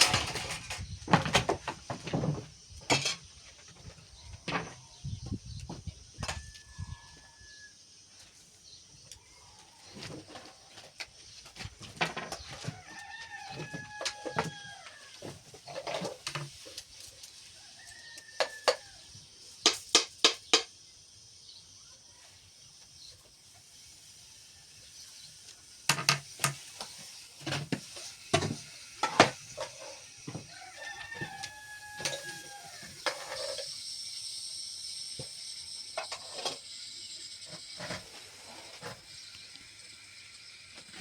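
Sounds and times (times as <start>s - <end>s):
rooster crowing: 6.3s - 7.8s, 12.6s - 15.2s, 17.5s - 19.1s, 30.3s - 33.5s.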